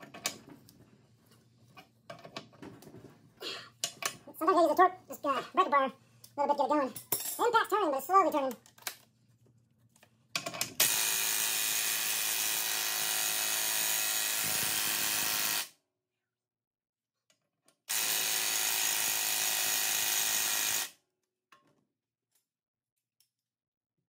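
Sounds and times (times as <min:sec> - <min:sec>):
impact wrench running: 0:10.8 - 0:15.7, 0:17.9 - 0:21.0.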